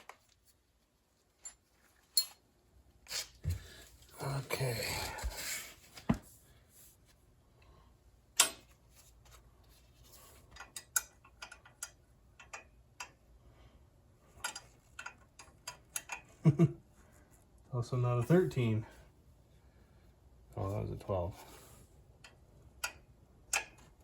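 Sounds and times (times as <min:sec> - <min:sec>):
metal tools clicking and clinking: 0:01.4 - 0:02.4.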